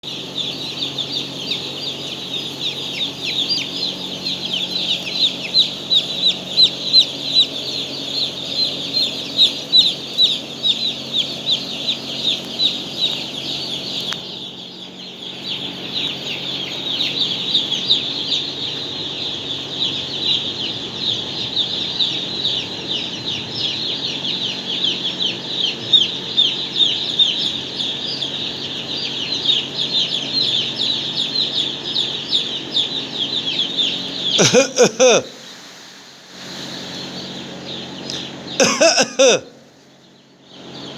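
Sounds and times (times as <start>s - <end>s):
chicks peeping: 0.0s - 40.9s
cough: 34.4s - 35.3s, 38.6s - 39.5s.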